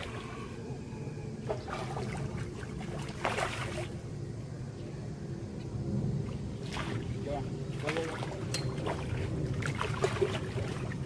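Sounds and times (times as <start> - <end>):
low motor hum: 0.0 - 11.0
short splashes: 1.4 - 4.0, 6.6 - 11.0.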